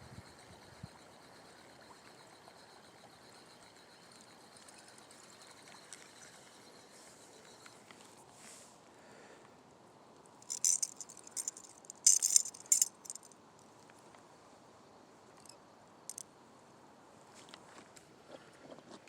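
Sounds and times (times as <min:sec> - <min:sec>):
metallic jingling and clicking: 0:10.4 - 0:13.3, 0:15.4 - 0:16.2.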